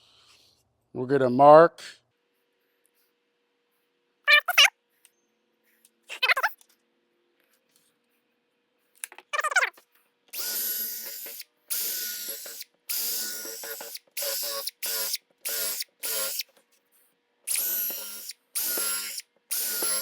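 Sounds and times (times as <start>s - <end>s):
power drill whining: 10.4s - 16.5s, 17.5s - 20.0s.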